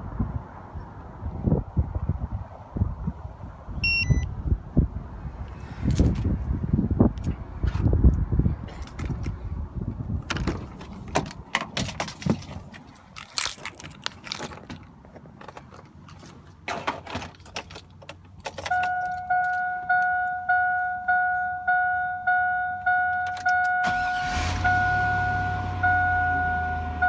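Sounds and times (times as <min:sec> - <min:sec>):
electronic beeps in a car: 0:03.8 - 0:04.3, 0:18.7 - 0:24.0, 0:24.6 - 0:27.0
low steady hum: 0:03.8 - 0:04.3.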